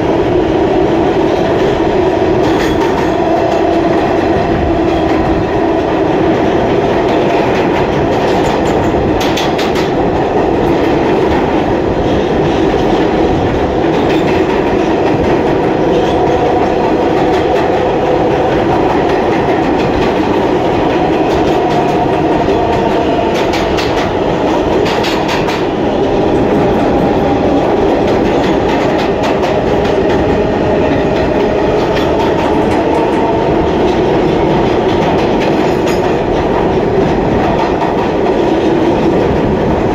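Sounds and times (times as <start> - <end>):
subway car rumbling on track: 0.0 - 39.9
wheel clacks over rail joints: 7.1 - 11.6, 12.4 - 25.8, 31.0 - 39.5.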